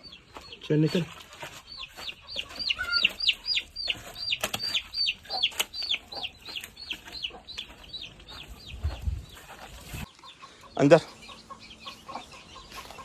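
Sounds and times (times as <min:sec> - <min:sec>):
chick peeping: 0:00.0 - 0:13.0.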